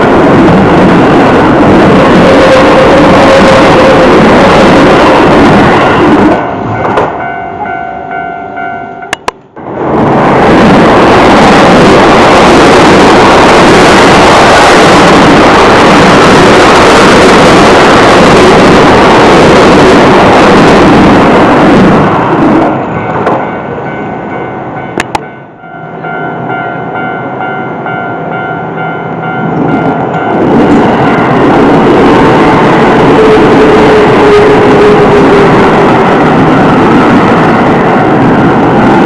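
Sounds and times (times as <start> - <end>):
train wheels rushing on rails: 0.0 - 39.0
crossing alarm ringing: 2.0 - 9.3, 22.9 - 39.0.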